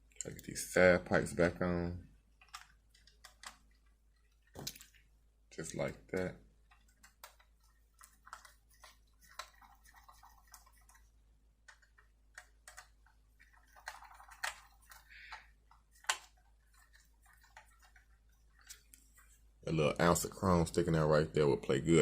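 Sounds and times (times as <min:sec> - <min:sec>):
model parts clicking: 0:02.4 - 0:05.0.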